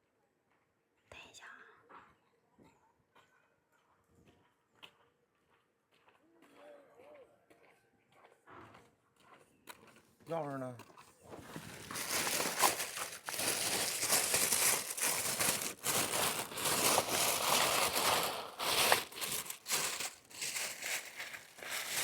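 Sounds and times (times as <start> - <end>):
crinkling and rustling by hand: 10.8 - 22.0.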